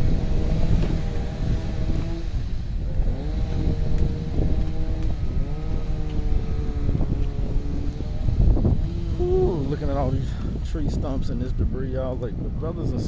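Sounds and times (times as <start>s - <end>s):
vehicle engine running: 0.0s - 10.6s
road and wind rumble: 0.0s - 13.0s.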